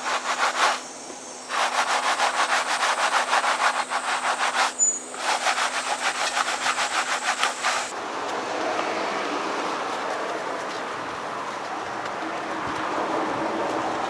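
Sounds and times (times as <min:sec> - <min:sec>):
brush scrubbing a wheel: 0:00.0 - 0:07.9
steady hiss: 0:00.0 - 0:07.9.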